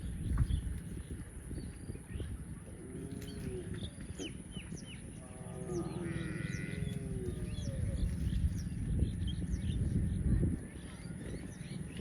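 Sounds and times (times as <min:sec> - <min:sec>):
small birds chirping: 0:00.0 - 0:12.0
cow mooing: 0:05.4 - 0:07.4.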